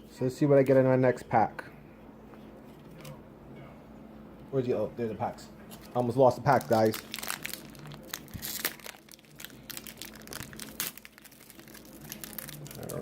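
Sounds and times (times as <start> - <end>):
foil wrapper crinkling and tearing: 5.8 - 13.0.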